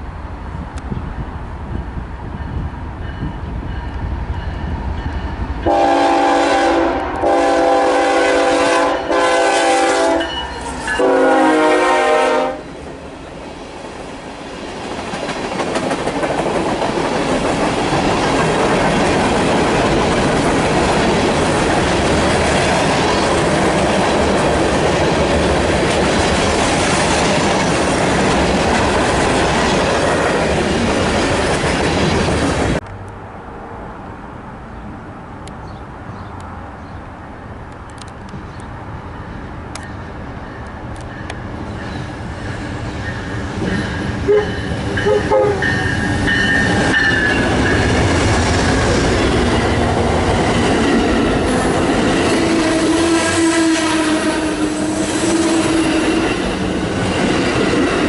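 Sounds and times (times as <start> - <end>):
diesel locomotive horn: 5.6 - 12.7, 44.2 - 46.0, 51.4 - 56.4
train wheels clattering on rails: 13.8 - 32.8, 39.7 - 53.4.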